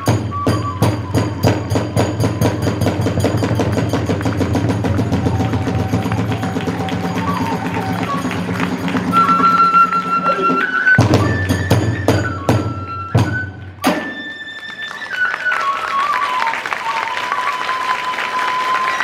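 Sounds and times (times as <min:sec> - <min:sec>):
bamboo flute: 0:00.0 - 0:19.0
people clapping: 0:02.8 - 0:11.7, 0:13.3 - 0:19.0.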